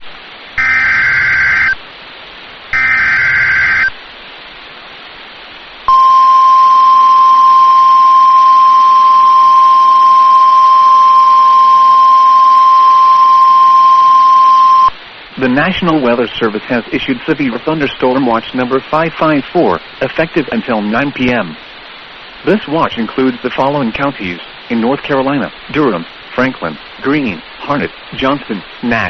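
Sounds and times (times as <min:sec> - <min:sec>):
steady warning alarm tone: 0:00.6 - 0:01.8, 0:02.7 - 0:04.0, 0:05.9 - 0:14.9
warbling digital data bursts: 0:00.6 - 0:01.8, 0:02.7 - 0:04.0.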